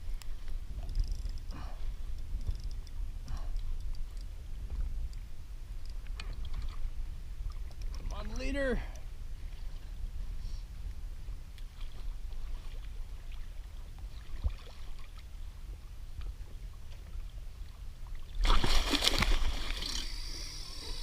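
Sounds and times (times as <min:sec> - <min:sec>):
steady low rumble: 0:00.0 - 0:14.5
water lapping around kayak: 0:00.0 - 0:21.0
shark thrashing splashes: 0:18.4 - 0:20.0.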